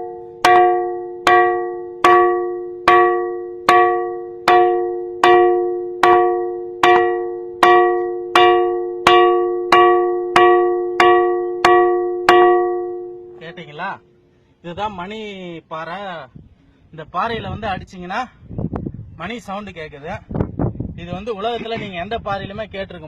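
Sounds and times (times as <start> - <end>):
rock struck ringing like a bell: 0.0 - 14.2.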